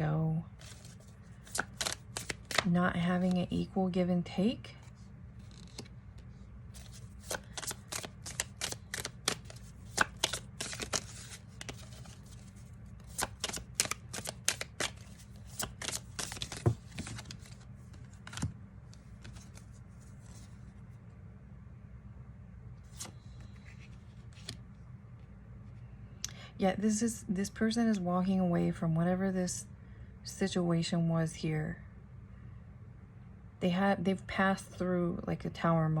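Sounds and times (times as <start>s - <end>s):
steady low hum: 0.0s - 36.0s
cards shuffling and clicking: 0.6s - 2.7s, 5.4s - 20.6s, 22.9s - 24.6s.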